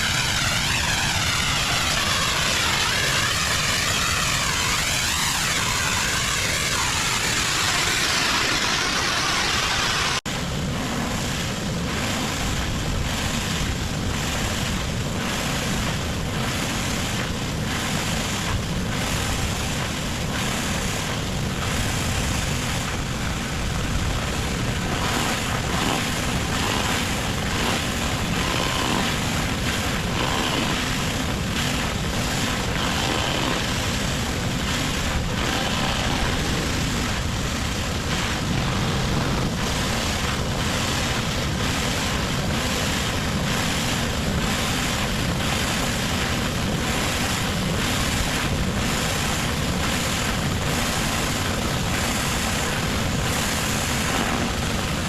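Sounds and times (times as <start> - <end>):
low rumble: 0.0 - 43.6
pressure washer spray hissing: 14.2 - 37.1.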